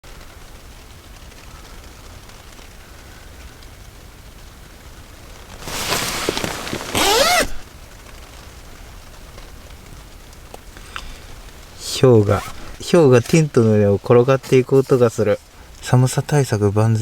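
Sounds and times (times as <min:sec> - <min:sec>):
ice scraping down tent fabric: 0:05.4 - 0:07.7, 0:11.7 - 0:15.0.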